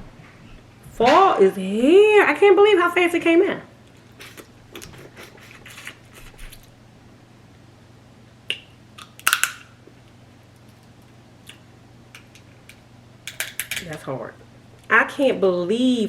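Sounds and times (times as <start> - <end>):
crab shell cracking: 8.5 - 9.7.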